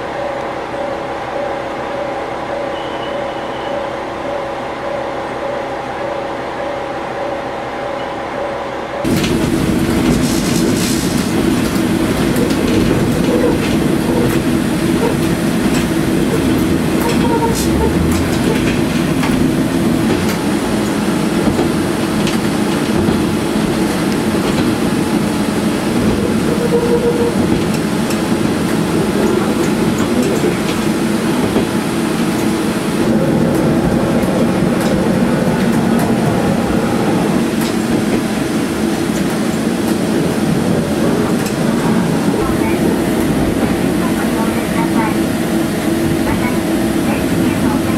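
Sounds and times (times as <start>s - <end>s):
diesel engine drone: 4.1s - 47.9s
wheels rumbling on track: 8.9s - 47.9s
rail joint clicks: 9.1s - 45.2s.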